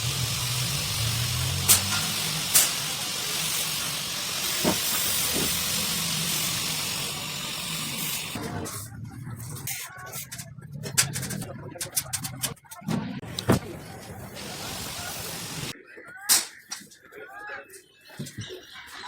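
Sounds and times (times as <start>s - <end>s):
steady hiss: 0.0s - 8.4s, 14.3s - 15.7s.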